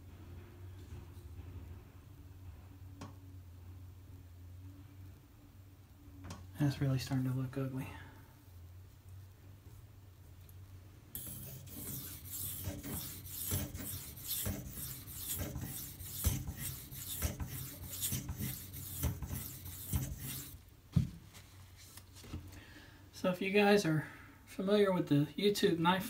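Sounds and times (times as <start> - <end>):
knife scraping on whetstone: 11.2 - 20.6.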